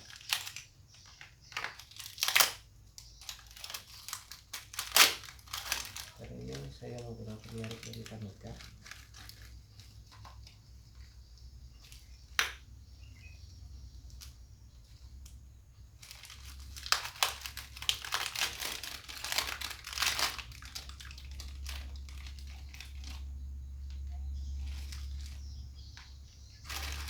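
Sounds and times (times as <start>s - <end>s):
crinkling: 0.0s - 27.0s
small clicks of engine parts: 16.0s - 27.0s.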